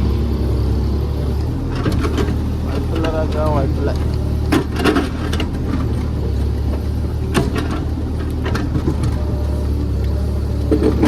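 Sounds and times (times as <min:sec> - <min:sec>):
excavator diesel engine running: 0:00.0 - 0:11.0
bucket knocking and scraping stone: 0:10.7 - 0:11.0.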